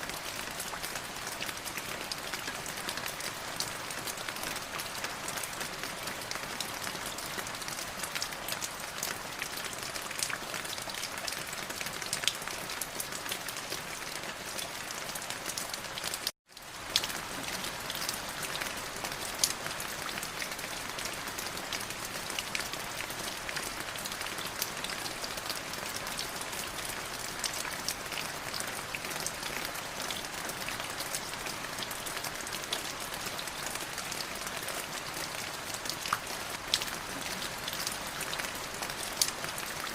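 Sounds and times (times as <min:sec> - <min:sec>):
light drizzling rain: 0:00.0 - 0:39.9.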